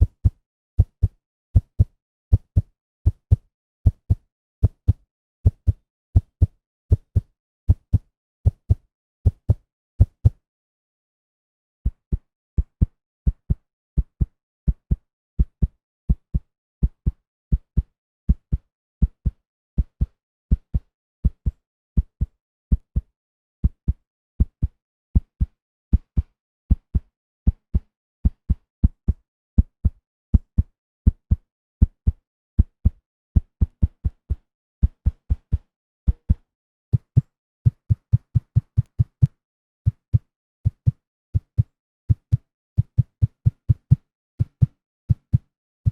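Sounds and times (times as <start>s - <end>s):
heartbeat thumps: 36.9s - 39.3s, 39.9s - 45.9s.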